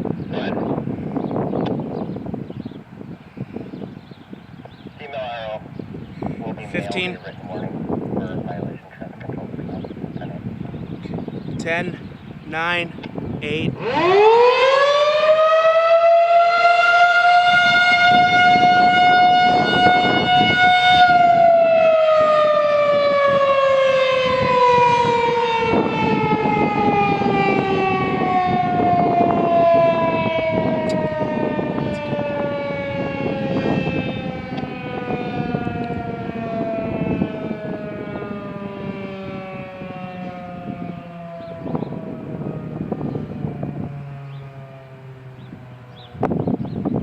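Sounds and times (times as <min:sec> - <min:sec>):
warning siren wailing: 0:09.6 - 0:47.0.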